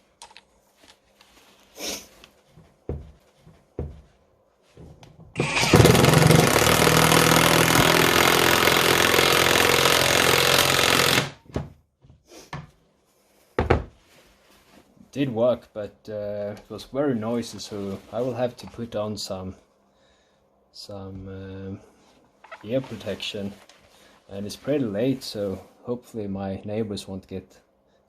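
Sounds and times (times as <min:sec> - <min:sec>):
impact driver hammering screw: 0:05.4 - 0:11.4.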